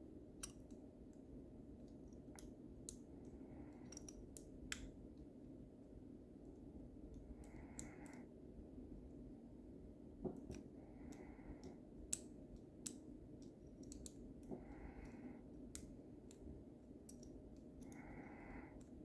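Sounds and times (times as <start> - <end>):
faint metallic clicks in a lock: 0.4 - 0.8, 1.9 - 4.9, 10.3 - 16.5, 17.1 - 18.0
soft breaths: 3.0 - 4.3, 7.1 - 8.6, 10.4 - 12.0, 14.4 - 16.6, 17.2 - 19.0.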